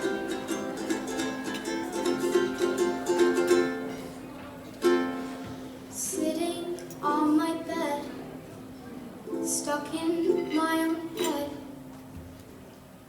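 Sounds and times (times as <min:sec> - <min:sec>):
acoustic string instrument strumming: 0:00.0 - 0:08.5, 0:09.3 - 0:12.2.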